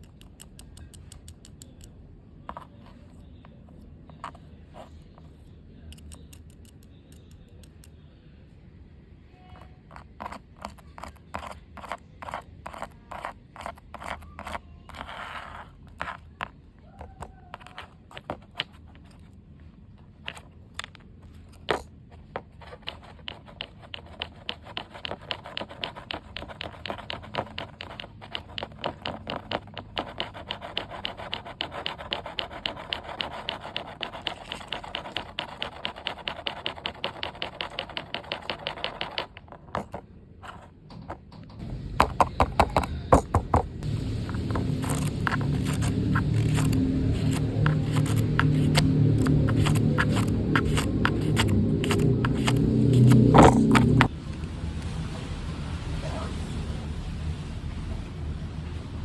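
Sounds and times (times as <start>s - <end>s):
paper fidget board clicking: 0.0s - 2.0s, 6.0s - 7.9s, 22.6s - 41.4s, 42.0s - 54.1s
paper scraping: 21.3s - 40.7s, 42.0s - 54.1s.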